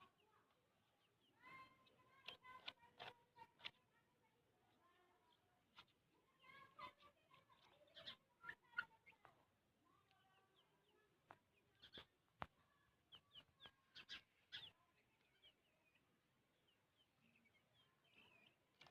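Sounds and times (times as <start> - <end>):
chicks peeping: 5.3 - 18.9.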